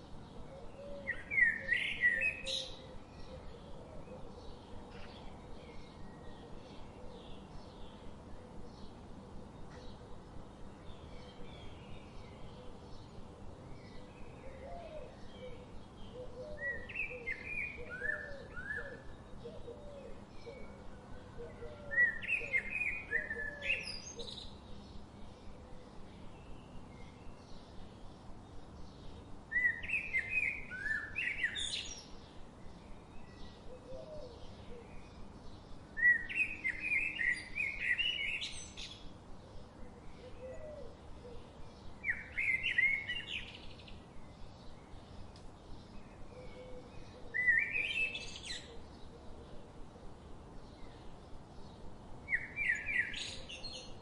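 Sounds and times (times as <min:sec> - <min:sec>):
birds chirping and singing: 0:21.5 - 0:49.7, 0:50.6 - 0:54.0.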